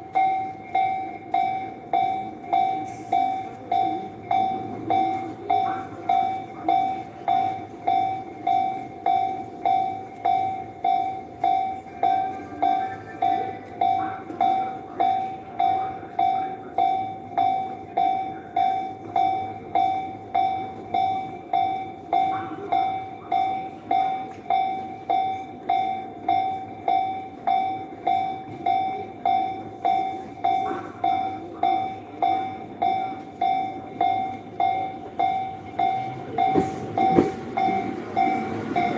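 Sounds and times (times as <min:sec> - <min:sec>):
level crossing warning bell: 0:00.0 - 0:38.9
train rumbling past: 0:32.2 - 0:38.9.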